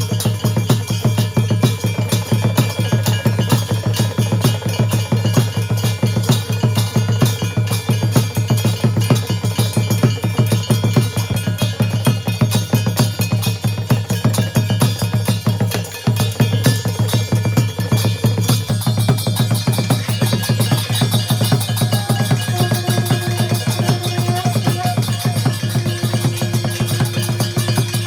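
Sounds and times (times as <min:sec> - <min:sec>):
drums beaten fast: 0:00.0 - 0:28.0
metal bells ringing: 0:00.0 - 0:28.0.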